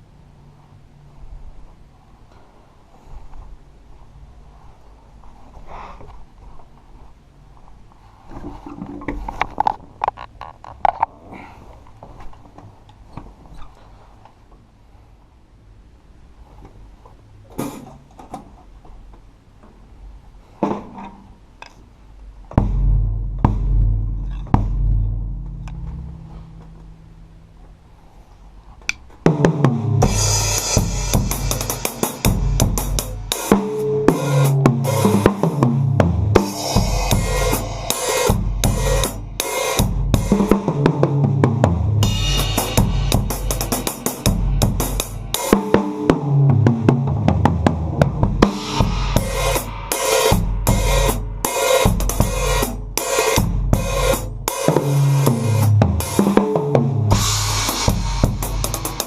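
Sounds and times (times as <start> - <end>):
recorded song with bass line: 22.5 - 27.4, 29.3 - 59.0
acoustic drum kit playing a groove: 22.6 - 26.1, 29.3 - 59.0.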